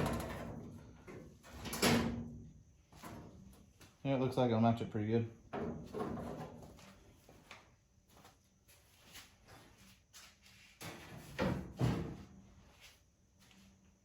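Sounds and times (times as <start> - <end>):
knocks and clunks of handling: 5.5 - 6.9.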